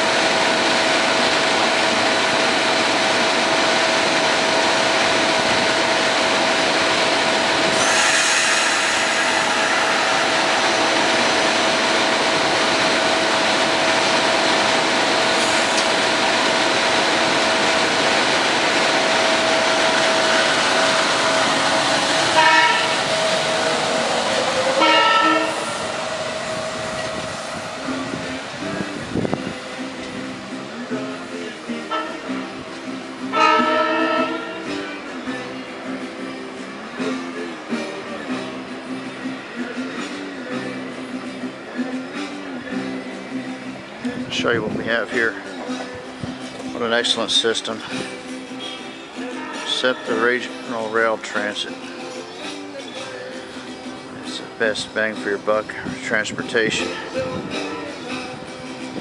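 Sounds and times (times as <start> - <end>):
electric train running: 0.0 - 59.0
train horn blasts: 7.7 - 10.9, 19.1 - 28.2, 31.9 - 32.5, 33.3 - 34.8, 48.7 - 50.4, 56.7 - 57.4.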